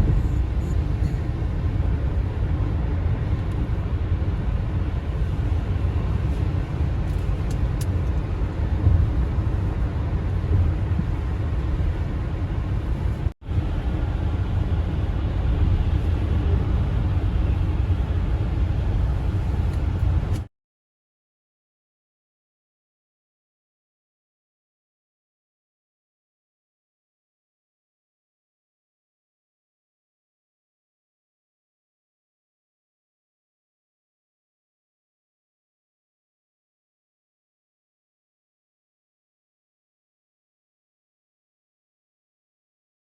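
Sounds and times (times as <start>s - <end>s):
car driving at highway speed: 0.0s - 20.5s
road and tyre noise: 0.0s - 20.5s.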